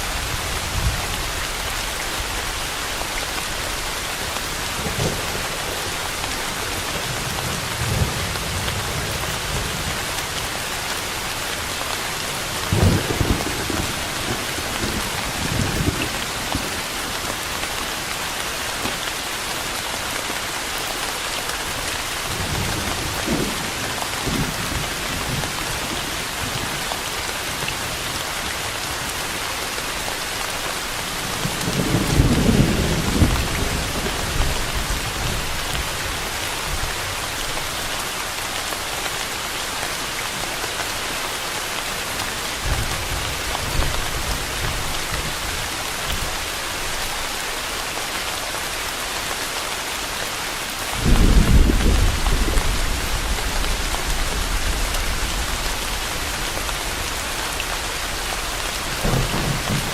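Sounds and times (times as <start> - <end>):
steady rain hissing: 0.0 - 59.9
thunder rumbling: 51.0 - 59.9.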